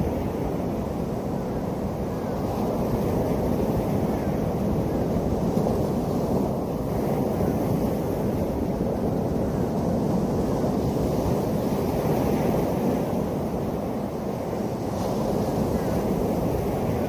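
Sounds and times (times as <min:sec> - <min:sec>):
wind noise on microphone: 0:00.0 - 0:17.0.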